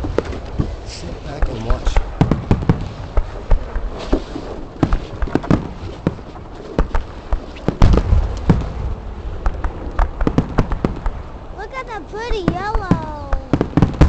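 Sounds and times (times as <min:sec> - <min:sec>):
fireworks bangs and crackles: 0:00.0 - 0:14.0.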